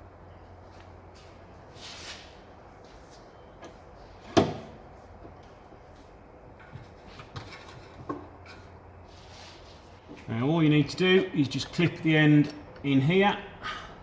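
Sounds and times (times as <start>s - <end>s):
soft scrape: 1.7s - 2.4s, 9.0s - 10.0s.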